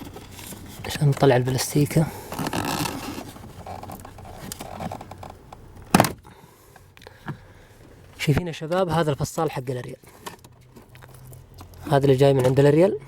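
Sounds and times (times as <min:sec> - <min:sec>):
plastic trim scraping and rustling: 0:00.0 - 0:05.4.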